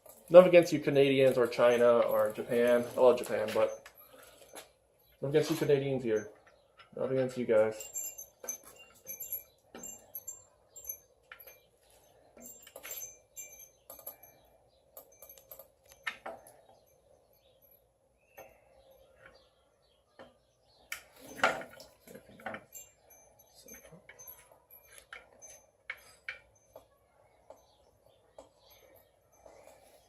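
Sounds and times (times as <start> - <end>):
metallic clinks of hand tools: 5.4 - 18.5, 21.0 - 27.0.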